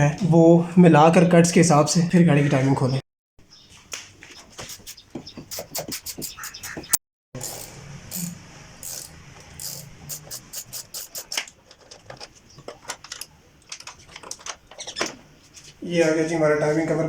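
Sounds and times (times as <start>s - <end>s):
hand tools clicking and clinking: 4.7s - 14.9s.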